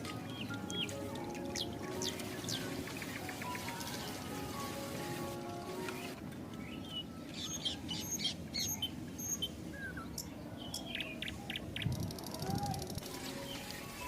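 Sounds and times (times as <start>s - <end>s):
music notes: 0.0s - 7.3s, 13.0s - 14.0s
high bird chirps: 0.3s - 4.2s.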